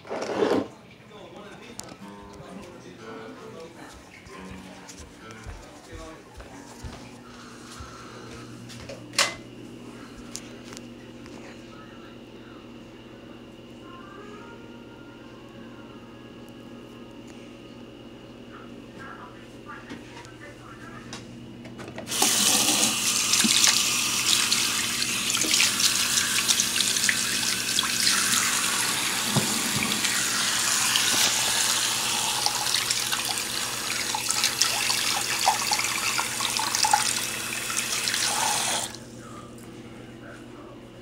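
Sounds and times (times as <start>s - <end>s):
tap water running into sink: 22.1s - 39.0s.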